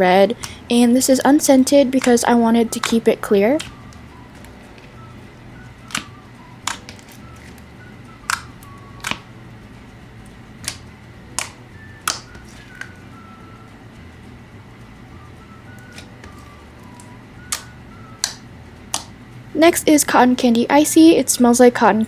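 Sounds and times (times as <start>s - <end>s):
soft background music: 0.0s - 22.0s
slime popping clicks: 5.9s - 7.0s, 8.3s - 9.2s, 11.4s - 12.9s, 17.5s - 19.1s.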